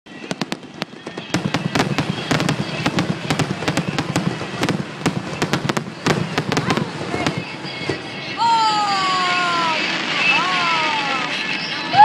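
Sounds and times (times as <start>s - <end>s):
fireworks bangs and crackles: 0.1s - 8.4s.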